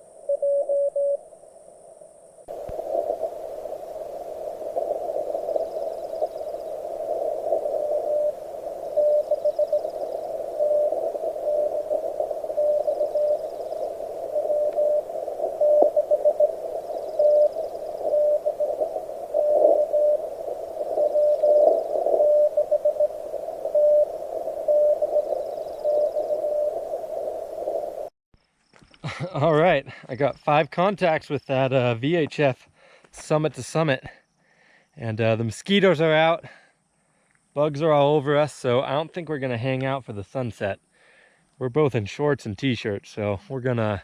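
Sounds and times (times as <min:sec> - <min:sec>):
morse code tone: 0:00.0 - 0:01.2, 0:07.3 - 0:26.9
radio static hiss: 0:00.0 - 0:28.1, 0:42.1 - 0:44.0.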